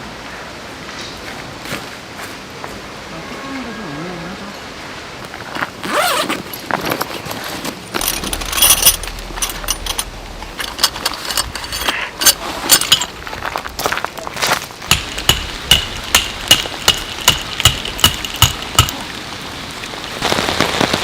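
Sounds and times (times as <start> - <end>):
gear clicking and rattling: 5.9 - 13.9, 14.9 - 19.0.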